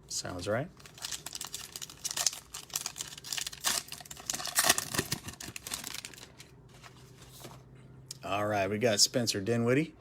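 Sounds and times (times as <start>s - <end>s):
cellophane wrapper crinkling: 0.8s - 6.6s.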